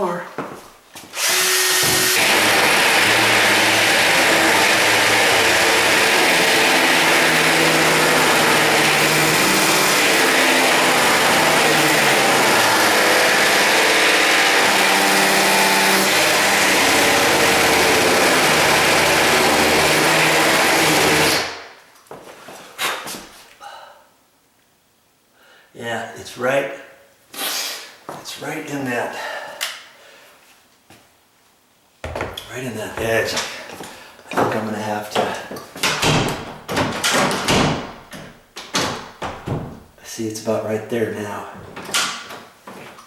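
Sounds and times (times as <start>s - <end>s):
electric drill running: 1.2s - 21.6s.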